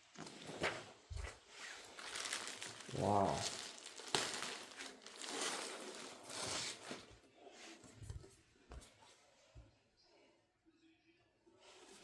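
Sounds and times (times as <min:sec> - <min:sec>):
packaging rustling and crinkling: 0:00.0 - 0:07.1.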